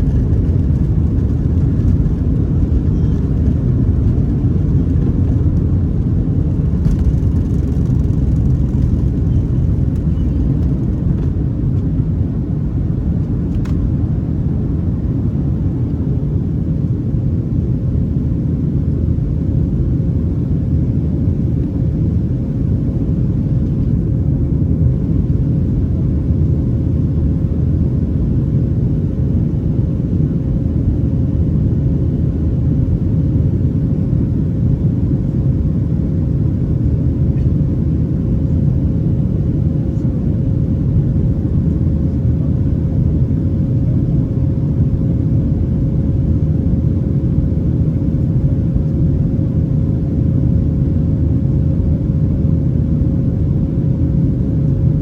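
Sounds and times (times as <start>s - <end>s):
faint steady hum: 0.0s - 17.0s
jet cabin rumble: 0.0s - 55.0s.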